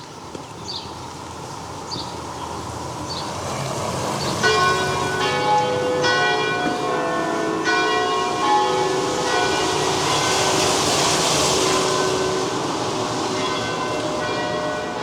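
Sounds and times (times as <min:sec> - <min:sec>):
rain hissing: 0:00.9 - 0:15.0
church bells ringing: 0:03.5 - 0:15.0.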